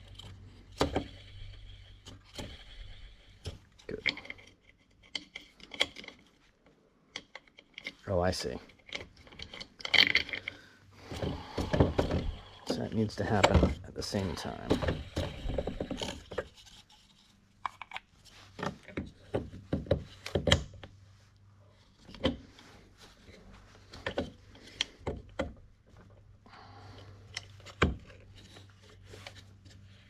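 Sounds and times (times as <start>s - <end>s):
tools clicking and knocking: 0.0s - 6.3s, 7.1s - 8.0s, 8.7s - 13.8s, 17.6s - 20.9s.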